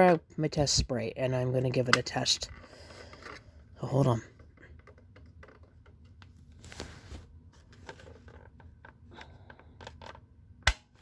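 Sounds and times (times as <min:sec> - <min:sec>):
sharp plastic click: 0:10.6 - 0:11.0.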